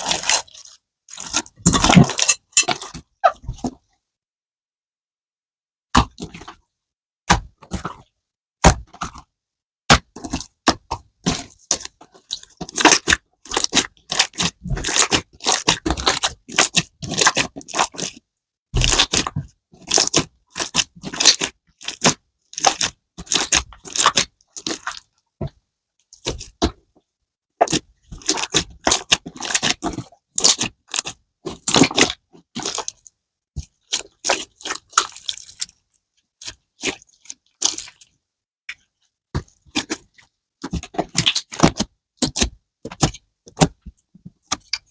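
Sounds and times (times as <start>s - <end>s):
slime crackling and popping: 11.2s - 18.2s, 18.8s - 25.1s.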